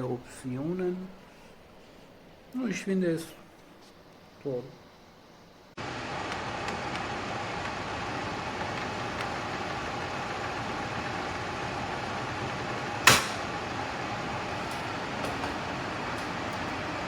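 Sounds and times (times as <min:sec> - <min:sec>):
air cooler fan whooshing: 0:05.8 - 0:17.0.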